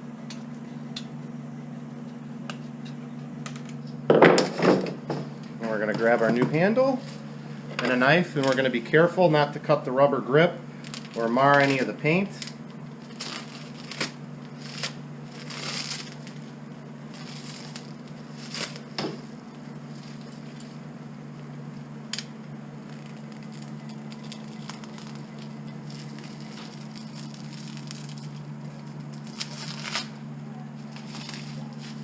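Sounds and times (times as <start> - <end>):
low steady hum: 0.0 - 32.0
knife cutting plastic wrapping: 10.8 - 19.2, 22.8 - 30.2, 30.8 - 32.0.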